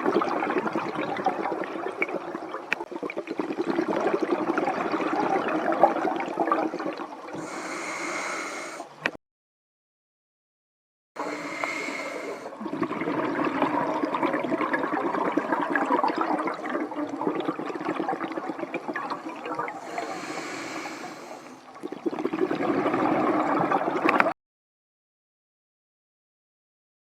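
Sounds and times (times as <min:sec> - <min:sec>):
exhaled air bubbling: 0:00.0 - 0:09.1, 0:11.2 - 0:24.4
regulator inhalation hiss: 0:07.3 - 0:09.0, 0:11.2 - 0:12.6, 0:19.8 - 0:21.7.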